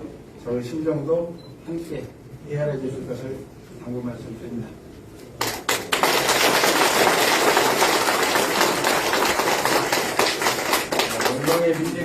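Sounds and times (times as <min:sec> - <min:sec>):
audience applauding: 0:05.4 - 0:12.0.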